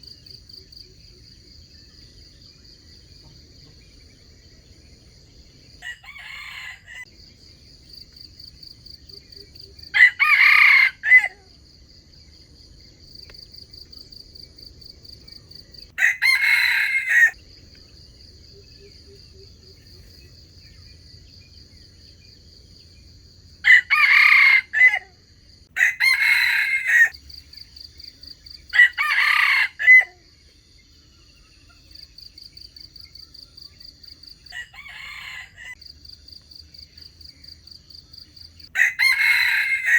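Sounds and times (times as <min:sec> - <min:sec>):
roosters crowing: 0:05.8 - 0:07.1, 0:09.9 - 0:11.4, 0:16.0 - 0:17.4, 0:23.6 - 0:27.2, 0:28.7 - 0:30.2, 0:34.5 - 0:35.8, 0:38.7 - 0:39.9.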